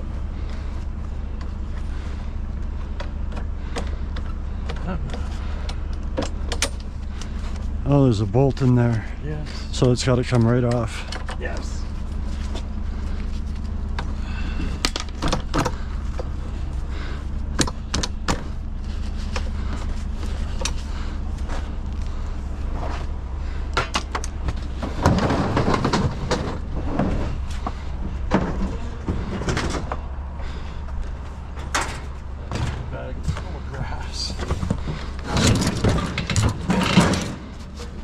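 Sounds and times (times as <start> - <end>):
steady low rumble: 0.0 - 38.0
scrap metal clanking and rattling: 12.0 - 38.0.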